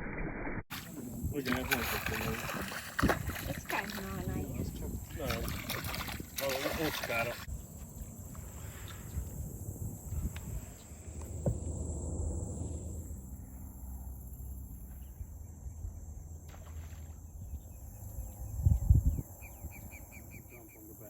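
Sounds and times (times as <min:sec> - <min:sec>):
high-pitched insect-like hum: 0:00.8 - 0:21.0
low steady rumble: 0:07.8 - 0:16.5.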